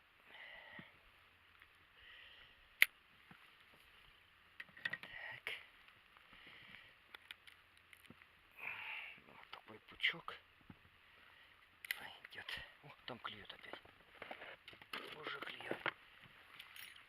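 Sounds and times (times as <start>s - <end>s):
handling clicks and rustling: 13.3s - 17.0s.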